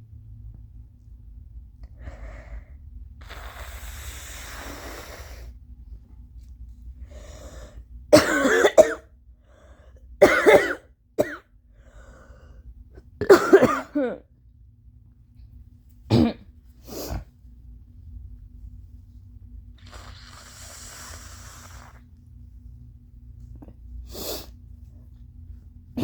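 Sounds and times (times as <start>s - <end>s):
person blowing nose: 3.2s - 5.5s, 19.8s - 22.0s, 24.1s - 24.5s
wet phlegmy coughs: 8.1s - 9.1s, 10.2s - 11.5s, 13.2s - 14.3s, 16.1s - 16.5s
faint breaths: 9.3s - 10.1s, 11.7s - 12.8s.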